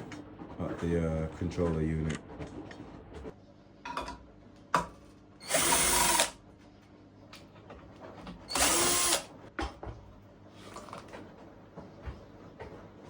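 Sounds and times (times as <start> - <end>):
power drill-driver running: 5.4 - 6.4, 8.5 - 9.3.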